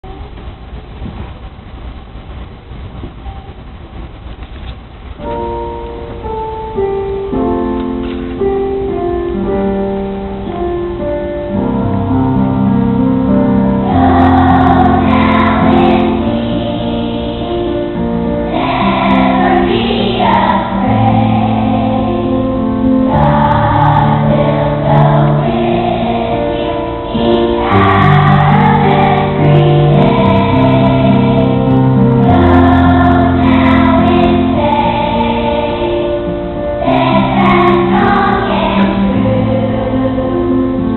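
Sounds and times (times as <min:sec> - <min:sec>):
held keyboard chords: 0:05.1 - 0:40.9
choir singing: 0:13.7 - 0:40.9.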